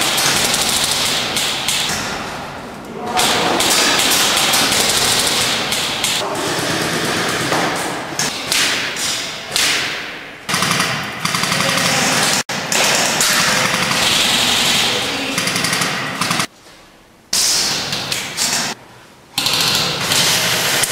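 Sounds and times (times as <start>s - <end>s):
airsoft guns firing bursts: 0.0s - 2.0s, 3.2s - 9.8s, 10.5s - 16.5s.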